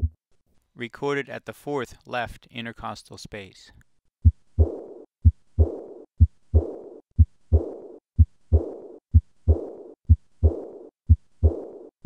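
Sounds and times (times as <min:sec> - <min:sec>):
rushing heart murmur: 0:04.2 - 0:11.7
heartbeat thumps: 0:04.2 - 0:12.0.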